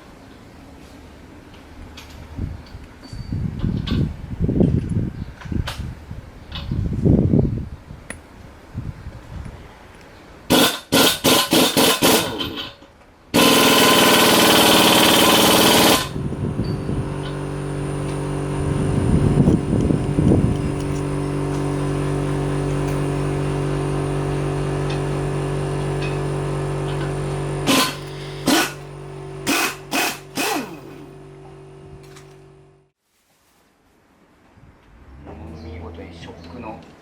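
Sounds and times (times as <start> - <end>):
loud steady air hiss: 10.5 - 12.6, 26.2 - 30.9
pneumatic impact wrench hammering: 10.5 - 18.5, 19.4 - 31.2.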